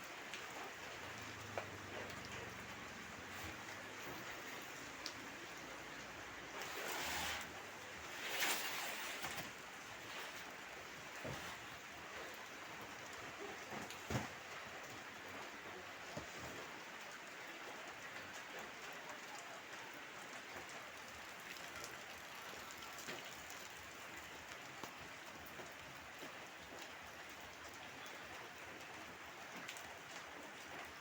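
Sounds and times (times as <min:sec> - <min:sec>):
raindrops ticking: 0:00.0 - 0:06.9, 0:16.8 - 0:31.0
heavy rain falling: 0:00.0 - 0:31.0.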